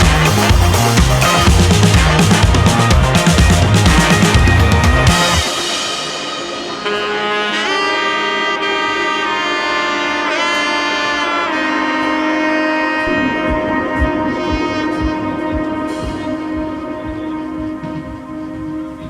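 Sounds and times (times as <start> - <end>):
low pulsing beat: 0.0 - 5.8, 13.0 - 19.0
melody of long held notes: 0.0 - 19.0.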